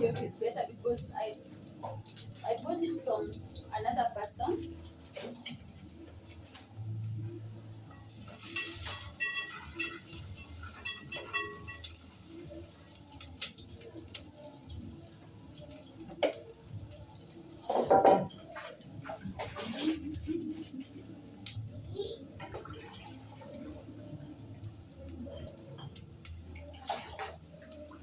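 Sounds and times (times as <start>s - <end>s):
liquid sloshing in a pot: 8.1s - 15.0s.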